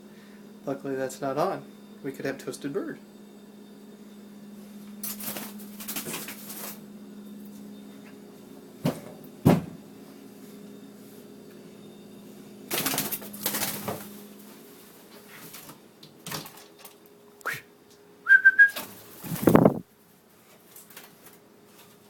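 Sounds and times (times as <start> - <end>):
steady low hum: 0.0 - 22.0
rustling and scuffling: 18.7 - 22.0.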